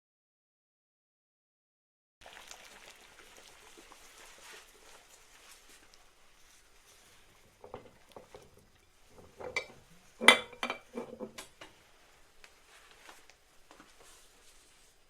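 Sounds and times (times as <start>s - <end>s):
glass jars clinking: 9.1s - 11.4s.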